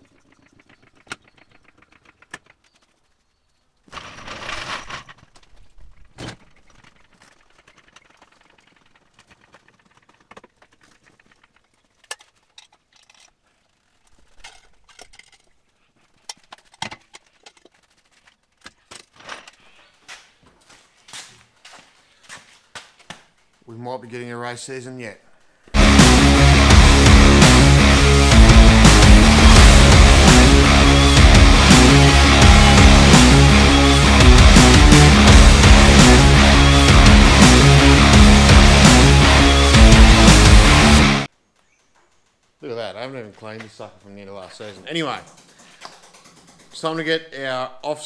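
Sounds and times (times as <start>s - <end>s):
small hard objects clicking: 5.0s - 18.9s
loud rushing burst: 25.8s - 41.3s.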